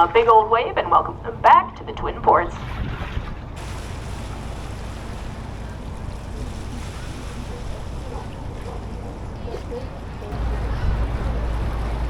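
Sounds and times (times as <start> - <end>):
wind noise on microphone: 2.2 - 4.3.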